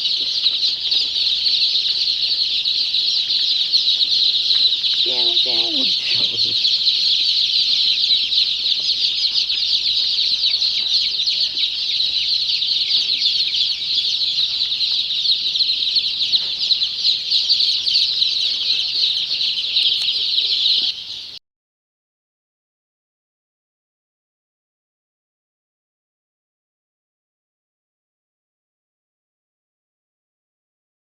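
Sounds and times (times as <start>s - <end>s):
chicks peeping: 0.0s - 21.4s.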